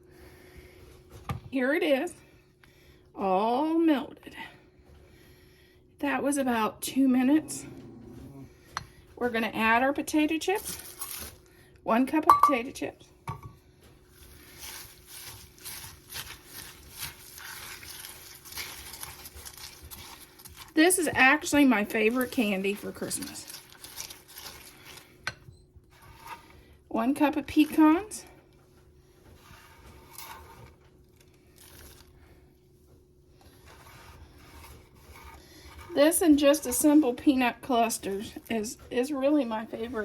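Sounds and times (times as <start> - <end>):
low steady hum: 0.0 - 40.0
crunchy scraping in a bowl: 14.0 - 25.2, 25.8 - 28.2, 29.2 - 32.4, 33.4 - 37.0
soft scraping and rustling: 25.9 - 26.8, 29.0 - 32.2, 33.3 - 36.0.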